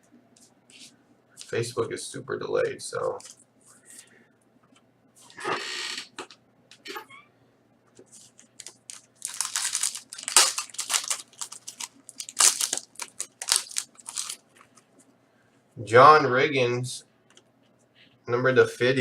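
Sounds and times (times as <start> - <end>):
packaging crinkling and rustling: 8.1 - 14.8.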